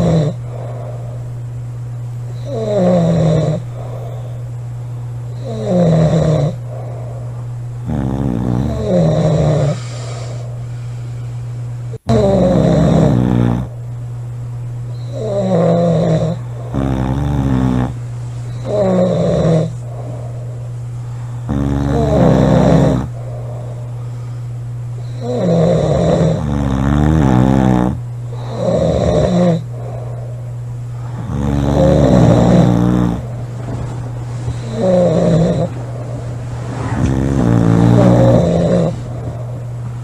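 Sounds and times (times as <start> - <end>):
people snoring loudly: 0.0 - 1.2, 2.3 - 4.4, 5.4 - 10.5, 12.0 - 13.7, 15.0 - 18.0, 18.6 - 20.6, 21.4 - 24.0, 25.0 - 33.4, 34.5 - 36.1, 36.8 - 39.8
steady low hum: 0.0 - 40.0.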